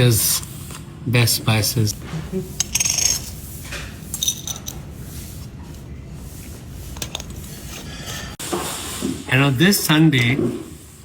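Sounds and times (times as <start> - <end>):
tableware clinking: 2.6 - 3.3, 4.1 - 4.8.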